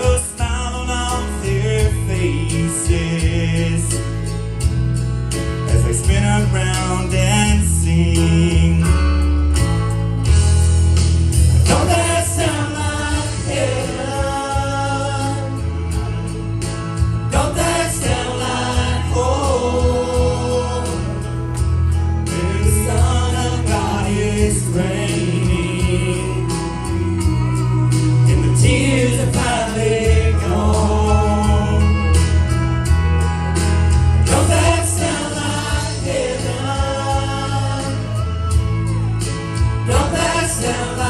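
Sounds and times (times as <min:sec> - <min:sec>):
group singing gospel song: 0:00.0 - 0:04.0, 0:11.4 - 0:32.7, 0:33.9 - 0:38.9, 0:39.5 - 0:41.0
instrumental backing with bass notes: 0:00.0 - 0:41.0.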